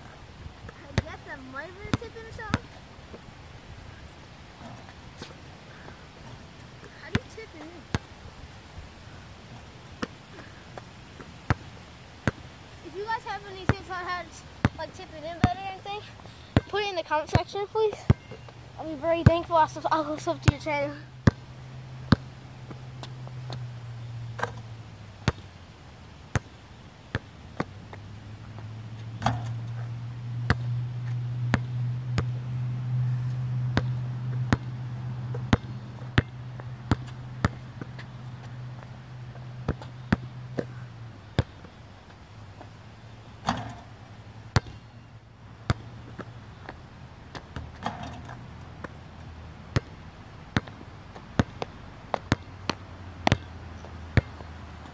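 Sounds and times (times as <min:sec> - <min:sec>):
basketball bouncing: 0:17.3 - 0:18.5, 0:20.1 - 0:21.4, 0:22.1 - 0:23.7, 0:24.4 - 0:25.5, 0:29.0 - 0:29.8, 0:30.4 - 0:30.7, 0:31.5 - 0:32.4, 0:33.7 - 0:40.8, 0:43.4 - 0:44.8, 0:45.7 - 0:46.4, 0:49.7 - 0:49.9, 0:50.6 - 0:54.6
steady low hum: 0:18.1 - 0:54.9.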